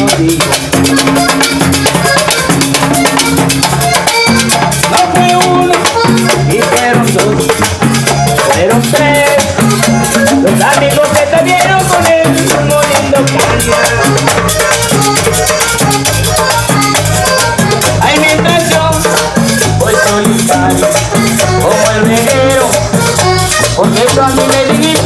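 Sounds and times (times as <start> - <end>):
band playing instrumental: 0.0 - 25.0
shaken percussion rhythm: 0.0 - 25.0.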